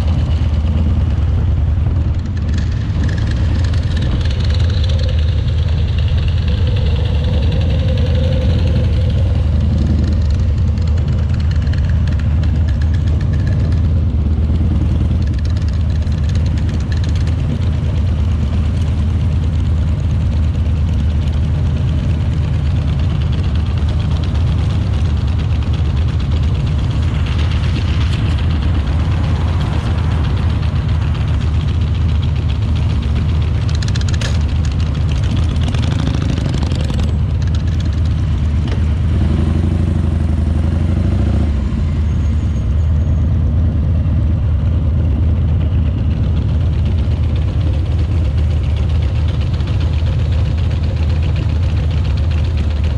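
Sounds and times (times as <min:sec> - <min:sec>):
motorcycle engine deep rumble: 0:00.0 - 0:52.9.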